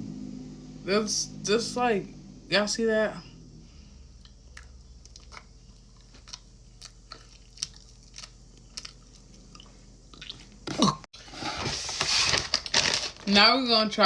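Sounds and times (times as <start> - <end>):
person chewing: 4.1 - 11.1.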